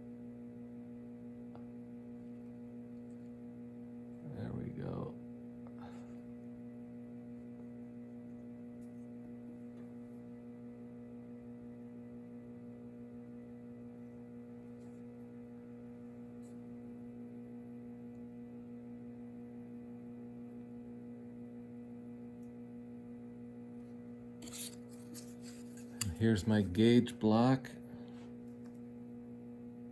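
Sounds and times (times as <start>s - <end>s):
electrical mains hum: 0.0s - 29.9s.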